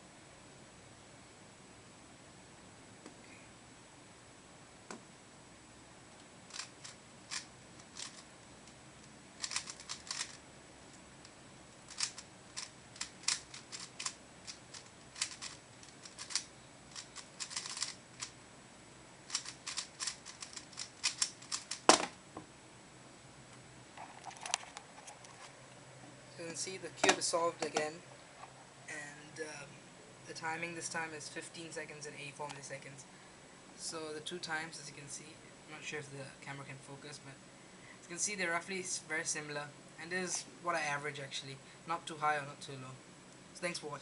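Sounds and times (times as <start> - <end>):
puzzle cube plastic clicks: 6.5 - 10.4, 11.9 - 18.4, 19.3 - 22.0.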